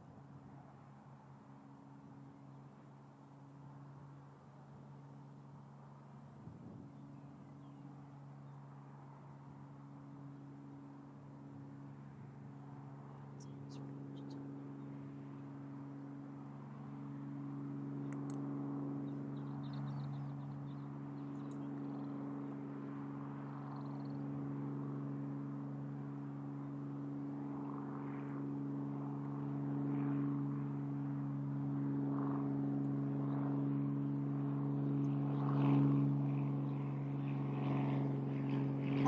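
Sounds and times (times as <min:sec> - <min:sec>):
low engine drone: 0:00.0 - 0:27.4.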